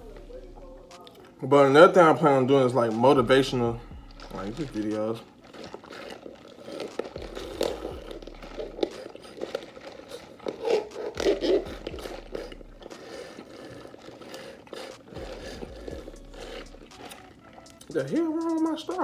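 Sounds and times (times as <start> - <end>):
chewing and crunching food: 0.0 - 19.0
rustling: 0.0 - 19.0
wet mouth clicks: 5.2 - 17.9.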